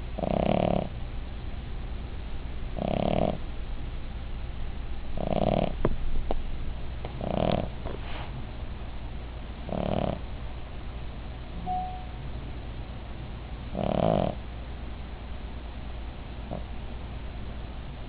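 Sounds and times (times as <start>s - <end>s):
dog snoring: 0.2s - 1.0s, 2.8s - 3.4s, 5.2s - 5.8s, 7.1s - 8.0s, 9.6s - 10.3s, 13.7s - 14.4s, 16.5s - 16.7s
high whistle: 11.6s - 12.3s.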